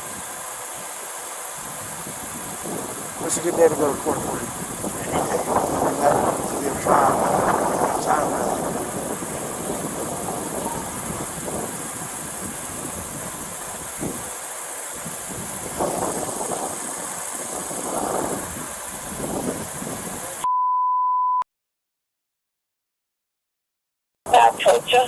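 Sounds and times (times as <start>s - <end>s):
steady hiss: 0.0s - 20.4s
high beep: 20.4s - 21.4s.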